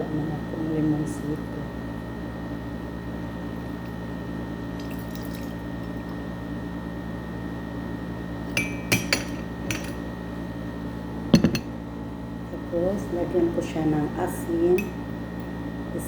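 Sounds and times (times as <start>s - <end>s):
lemon juice dripping into glass: 4.7s - 6.2s.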